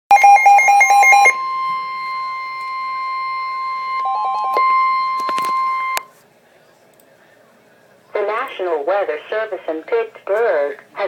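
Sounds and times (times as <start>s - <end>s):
alternating beep pattern: 0.1s - 6.1s
steady warning alarm tone: 0.1s - 6.1s.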